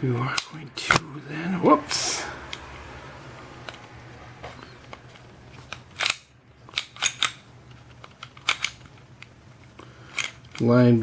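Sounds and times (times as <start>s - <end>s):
pistol slide clicking: 5.7s - 7.4s.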